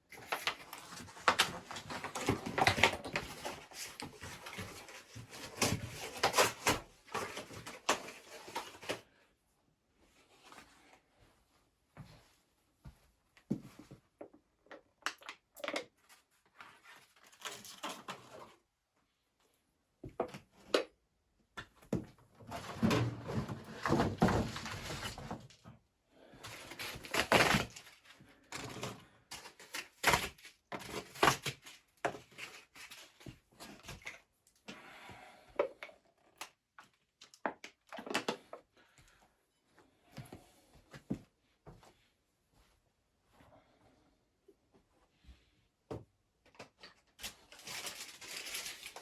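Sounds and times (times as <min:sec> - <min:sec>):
objects knocking and thudding: 0:21.6 - 0:25.7
rustling of handled objects: 0:46.4 - 0:49.0.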